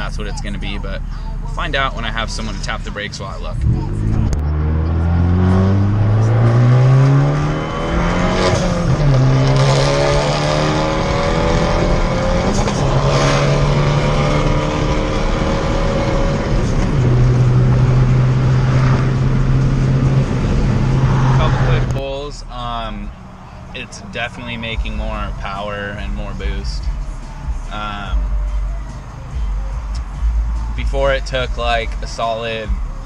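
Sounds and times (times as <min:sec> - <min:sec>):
car engine accelerating hard: 0:01.7 - 0:22.0.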